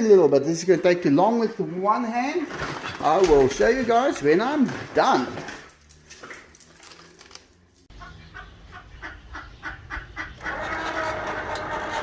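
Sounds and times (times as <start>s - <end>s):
poultry clucking: 7.9s - 12.0s.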